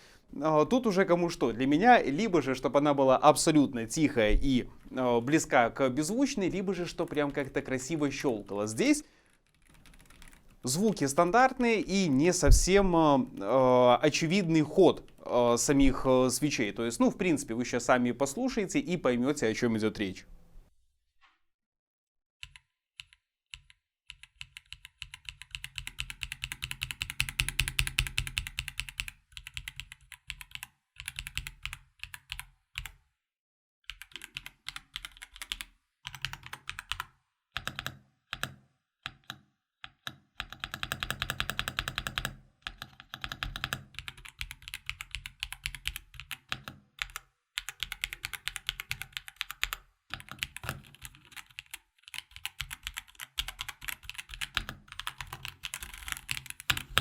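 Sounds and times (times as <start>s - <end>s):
typing on mechanical keyboard: 9.3s - 10.8s, 22.4s - 32.9s, 33.9s - 57.0s.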